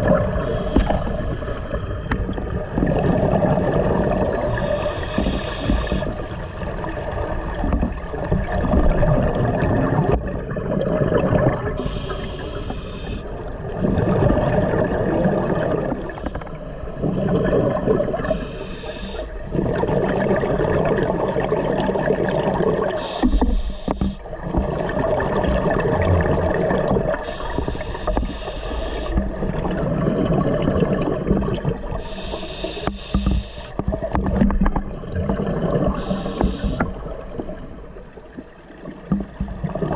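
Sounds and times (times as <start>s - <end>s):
exhaled bubbles: 0.0s - 39.9s
diver breathing through regulator: 0.2s - 2.1s, 4.2s - 6.3s, 11.8s - 13.3s, 18.2s - 19.4s, 23.0s - 24.2s, 27.2s - 29.3s, 32.0s - 33.8s, 35.9s - 37.1s.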